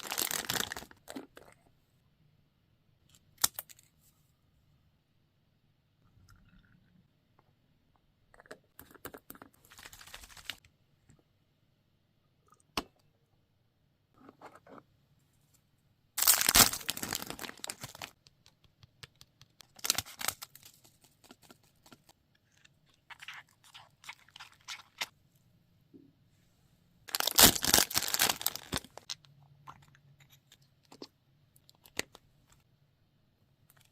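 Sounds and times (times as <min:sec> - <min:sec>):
packaging crinkling: 0:00.0 - 0:01.0, 0:16.2 - 0:18.1, 0:27.1 - 0:29.2
crackly tearing or crunching: 0:16.2 - 0:18.1, 0:27.1 - 0:29.1
small clicks and taps: 0:18.2 - 0:19.7.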